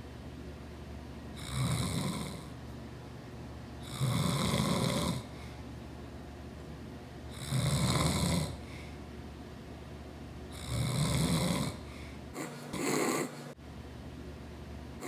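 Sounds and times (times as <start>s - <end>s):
man snoring: 1.4s - 2.5s, 3.8s - 5.3s, 7.3s - 8.6s, 10.5s - 11.8s, 12.4s - 13.5s.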